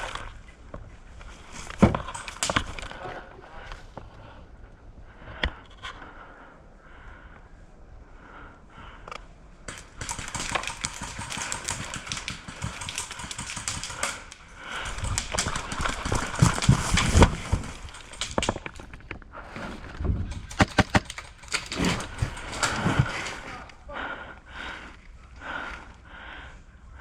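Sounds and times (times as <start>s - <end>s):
sharp clicks: 9.1s - 19.0s, 20.3s - 22.8s
clothing and gear rustling: 15.4s - 23.7s.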